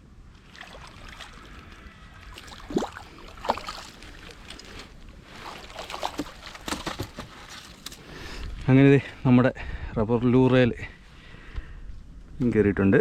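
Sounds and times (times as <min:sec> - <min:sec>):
water splashing against boat: 0:00.4 - 0:08.0.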